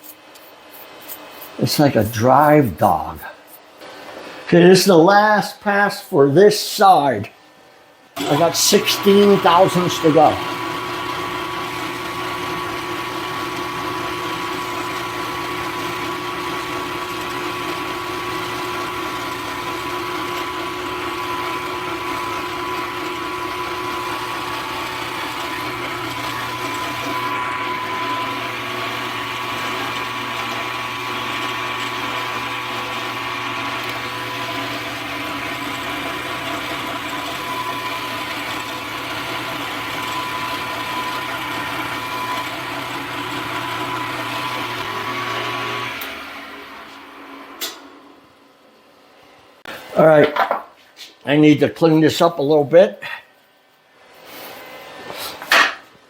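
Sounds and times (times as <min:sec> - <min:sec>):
milling machine hum and whine: 0:08.2 - 0:47.8.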